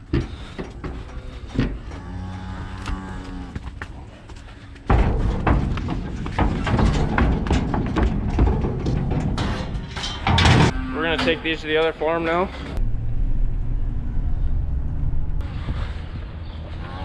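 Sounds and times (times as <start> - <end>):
cow mooing: 1.9 - 3.5, 10.7 - 11.8
rumbling din with knocks: 4.8 - 11.4.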